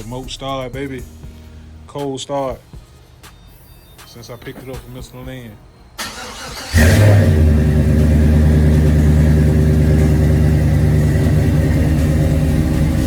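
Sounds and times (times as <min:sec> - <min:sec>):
car engine starting and idling: 0:06.0 - 0:13.0.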